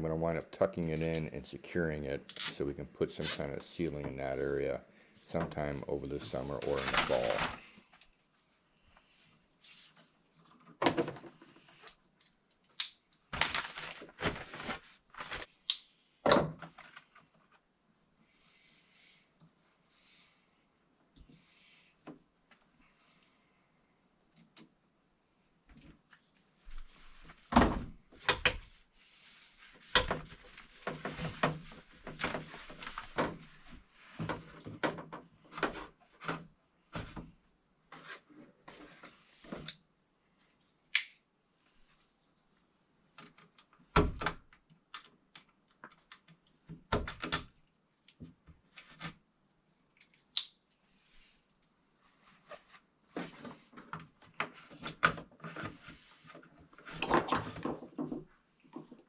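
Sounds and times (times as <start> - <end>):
tools and wire clicking: 2.2 - 2.6.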